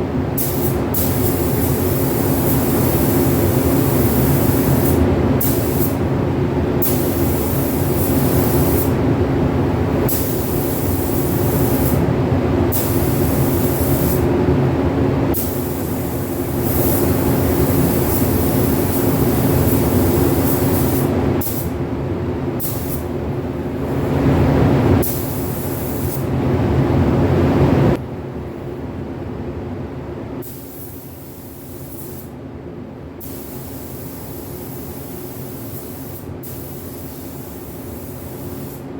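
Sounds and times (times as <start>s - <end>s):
ventilation fan humming: 0.0s - 38.9s
paint spray gun hissing: 0.4s - 6.0s, 6.8s - 9.0s, 10.1s - 12.0s, 12.7s - 14.2s, 15.4s - 21.7s, 25.0s - 26.2s, 33.2s - 38.8s.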